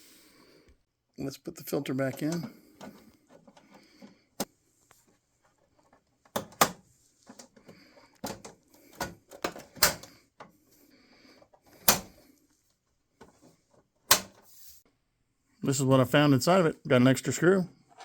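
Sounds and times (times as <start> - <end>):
plastic clicks and knocks: 5.9 - 10.5.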